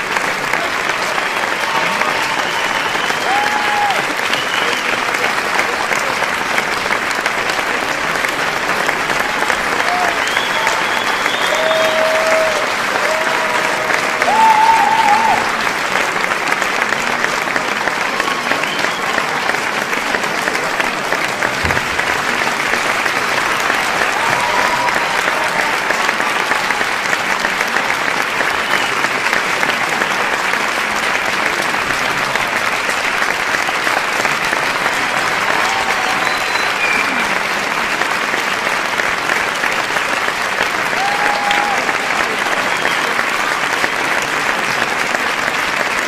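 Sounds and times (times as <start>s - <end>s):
audience applauding: 0.0s - 46.0s
crowd cheers and whistles: 0.8s - 5.3s, 9.0s - 15.7s, 17.5s - 19.9s, 23.6s - 29.4s, 34.9s - 38.5s, 40.8s - 43.8s.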